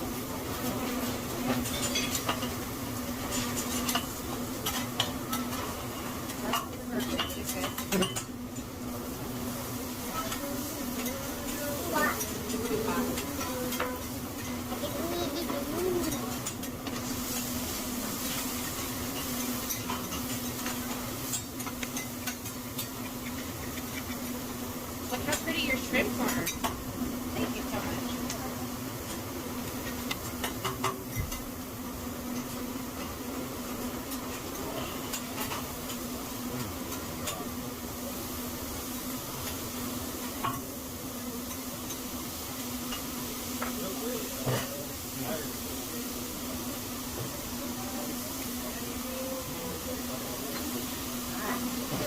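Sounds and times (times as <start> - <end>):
food sizzling on a griddle: 0.0 - 52.0
steady low hum: 7.2 - 35.1.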